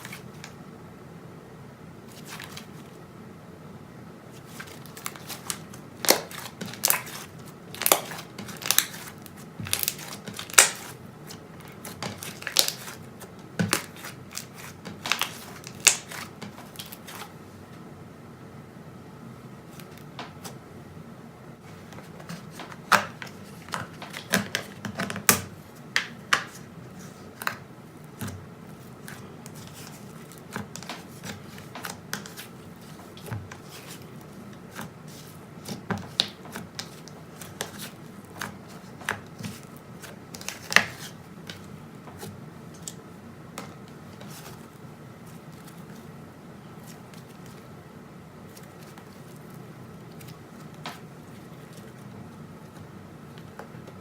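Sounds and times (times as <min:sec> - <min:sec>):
slime clicking and popping: 0:09.7 - 0:10.8.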